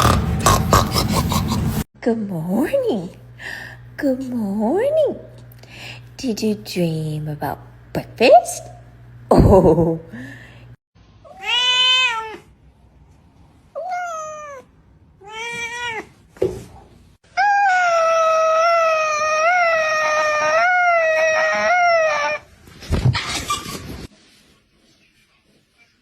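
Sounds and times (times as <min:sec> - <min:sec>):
cat meowing: 0:11.3 - 0:12.5, 0:13.8 - 0:16.1, 0:17.4 - 0:22.4.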